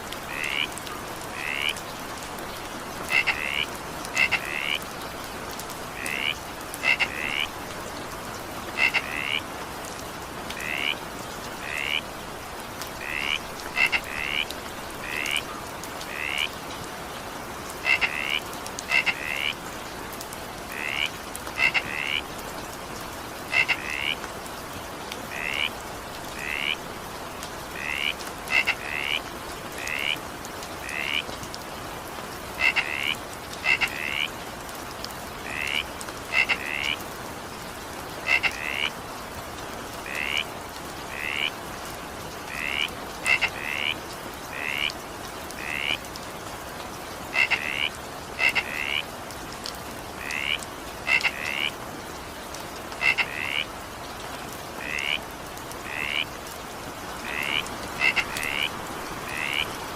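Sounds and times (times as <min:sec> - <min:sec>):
rain hissing: 0:00.0 - 0:59.9
frog croaking: 0:00.3 - 0:01.8, 0:03.0 - 0:04.8, 0:06.0 - 0:07.5, 0:08.8 - 0:09.4, 0:10.6 - 0:11.0, 0:11.6 - 0:12.1, 0:13.0 - 0:15.5, 0:16.1 - 0:16.5, 0:17.8 - 0:19.6, 0:20.7 - 0:22.3, 0:23.5 - 0:24.2, 0:25.3 - 0:26.8, 0:27.7 - 0:30.2, 0:30.8 - 0:31.2, 0:32.6 - 0:34.3, 0:35.4 - 0:37.0, 0:38.2 - 0:39.0, 0:40.0 - 0:40.5, 0:41.1 - 0:41.6, 0:42.5 - 0:45.0, 0:45.6 - 0:46.0, 0:47.3 - 0:49.1, 0:50.2 - 0:51.8, 0:53.0 - 0:53.7, 0:54.8 - 0:55.2, 0:55.8 - 0:56.4, 0:57.2 - 0:59.8.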